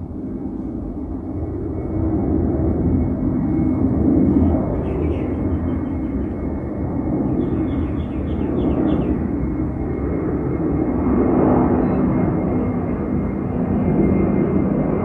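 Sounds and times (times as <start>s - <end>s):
jet taking off: 0.0s - 15.0s
bird chirps: 4.4s - 6.5s, 7.2s - 9.2s.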